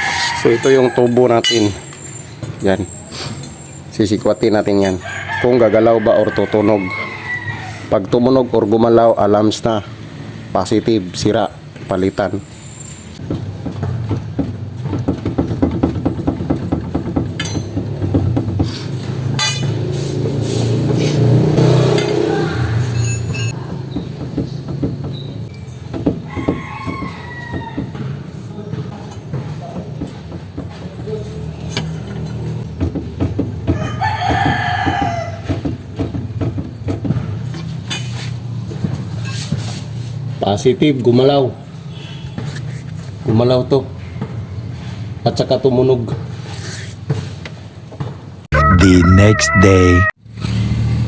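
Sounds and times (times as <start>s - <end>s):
rooster crowing: 0.0s - 1.3s, 4.9s - 7.9s, 21.6s - 23.6s, 26.2s - 28.8s, 33.7s - 35.6s, 48.5s - 50.1s
metallic clunking of ball joint: 0.6s - 2.1s.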